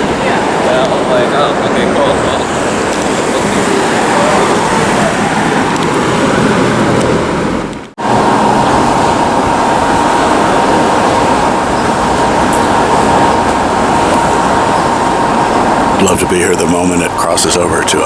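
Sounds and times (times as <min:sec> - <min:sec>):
city street traffic: 0:00.0 - 0:18.0
steady high tone: 0:08.5 - 0:18.0.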